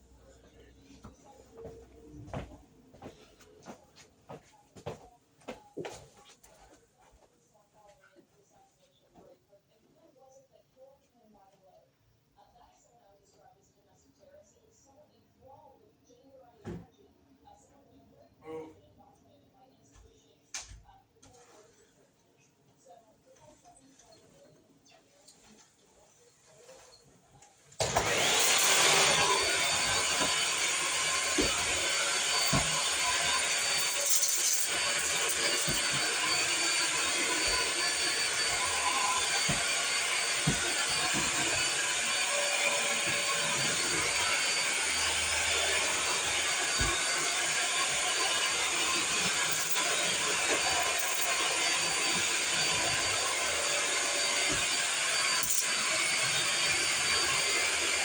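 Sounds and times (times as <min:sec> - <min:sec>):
vacuum cleaner running: 0:27.8 - 0:58.0.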